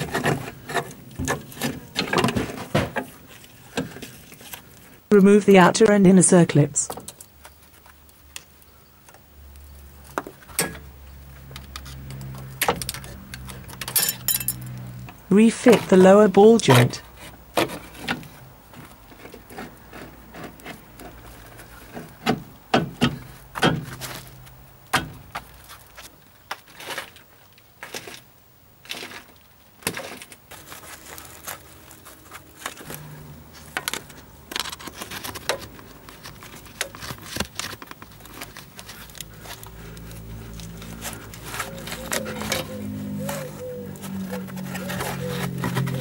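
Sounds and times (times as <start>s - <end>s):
hand tools clinking on metal: 12.8s - 14.8s.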